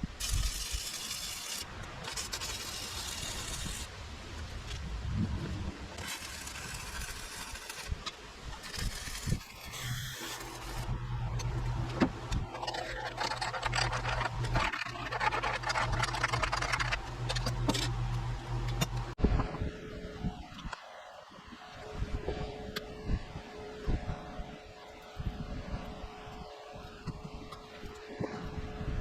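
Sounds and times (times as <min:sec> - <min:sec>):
welding arc crackling: 0:00.0 - 0:04.0, 0:05.5 - 0:19.2
electric welding hum: 0:00.0 - 0:29.0.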